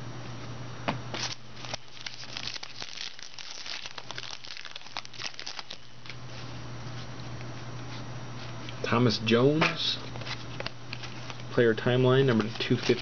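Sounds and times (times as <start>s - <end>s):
cards and plastic packaging crinkling: 1.2s - 6.2s, 10.0s - 11.5s, 12.2s - 13.0s.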